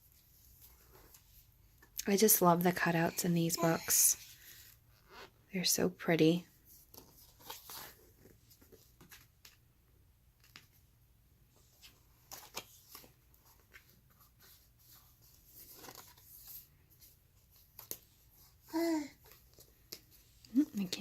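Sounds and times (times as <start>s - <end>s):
book pages turning: 6.8s - 9.6s, 11.8s - 18.4s.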